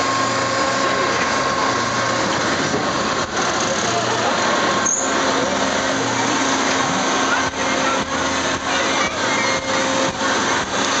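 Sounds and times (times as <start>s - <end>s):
carnival ride rushing noise: 0.0s - 11.0s
even hum: 0.0s - 11.0s.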